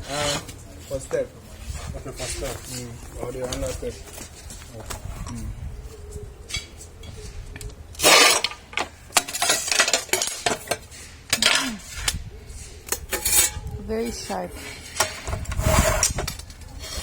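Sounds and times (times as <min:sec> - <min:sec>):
metal tool scraping hard surface: 0:00.0 - 0:00.6, 0:09.2 - 0:17.0.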